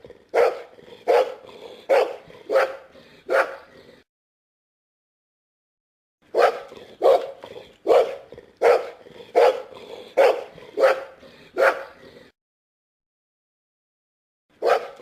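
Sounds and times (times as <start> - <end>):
dog barking: 0.3 - 3.7, 6.3 - 12.0, 14.6 - 15.0.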